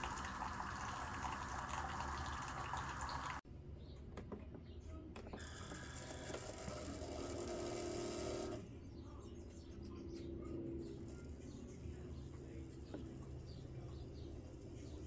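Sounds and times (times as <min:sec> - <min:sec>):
coffee maker mechanical hum: 0:00.0 - 0:03.4, 0:05.4 - 0:08.7.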